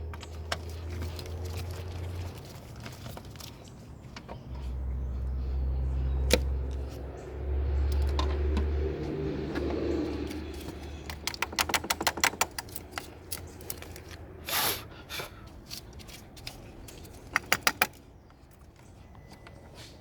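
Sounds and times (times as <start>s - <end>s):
sharp clicks and taps: 9.6s - 14.0s, 16.4s - 18.0s.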